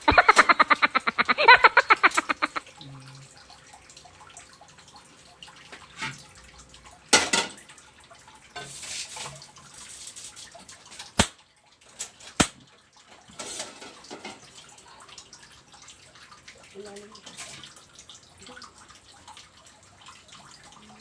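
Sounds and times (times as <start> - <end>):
water splashing: 0.0 - 2.8.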